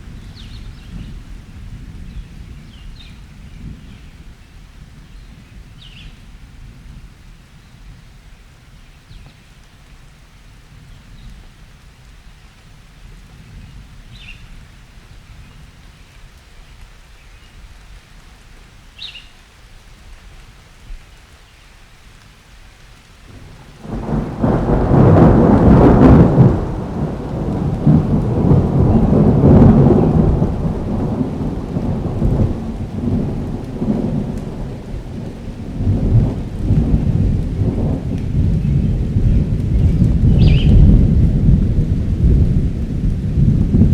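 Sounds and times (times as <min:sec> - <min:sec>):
rain: 0:00.0 - 0:43.9
thunder rumbling: 0:23.3 - 0:43.9
loud thunderclap: 0:23.4 - 0:43.9.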